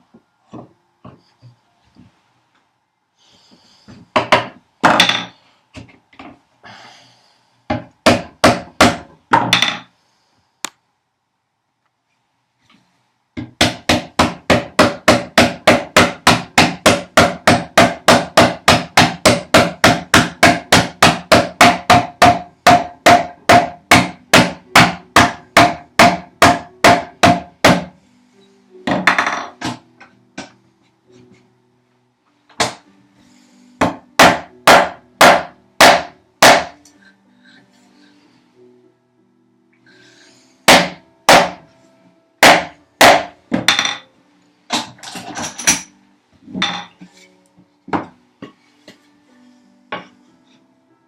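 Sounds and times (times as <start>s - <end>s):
hammer knocking wooden joints: 7.7s - 9.9s, 13.4s - 27.9s, 33.8s - 36.8s, 40.7s - 41.6s, 42.4s - 44.0s.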